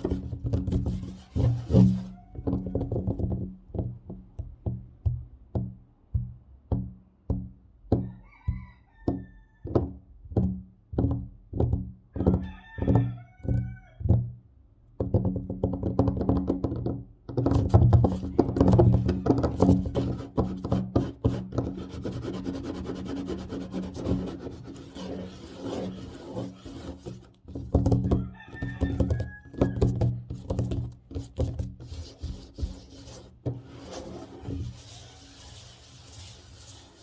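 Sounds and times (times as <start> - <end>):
scratching: 0.0 - 2.8, 17.9 - 37.0
fingers tapping on a table: 26.6 - 33.6.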